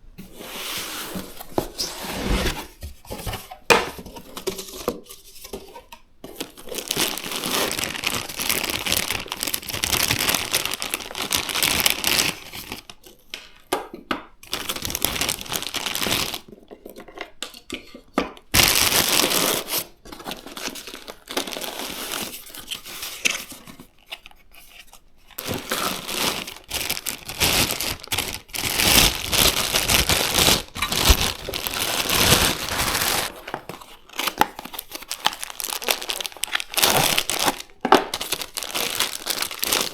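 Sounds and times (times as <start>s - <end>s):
packaging crinkling and tearing: 6.4s - 13.1s, 14.5s - 16.5s, 18.6s - 24.2s, 25.3s - 39.9s.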